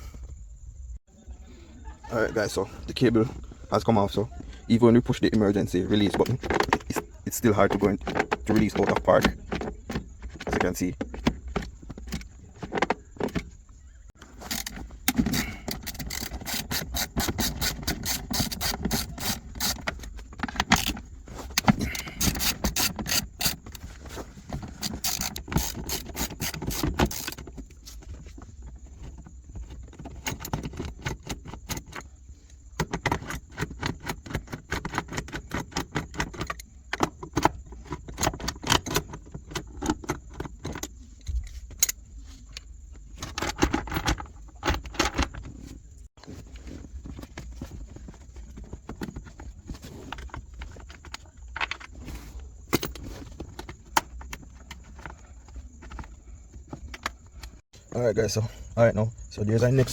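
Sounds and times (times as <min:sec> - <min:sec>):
hand tools clinking on metal parts: 0:14.4 - 0:23.9, 0:24.6 - 0:27.5.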